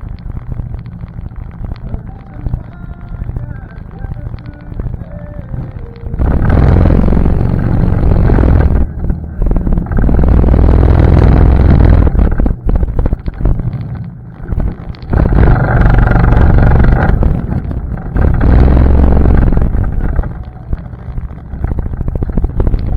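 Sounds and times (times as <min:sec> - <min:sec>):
atv engine running: 0:00.0 - 0:22.9.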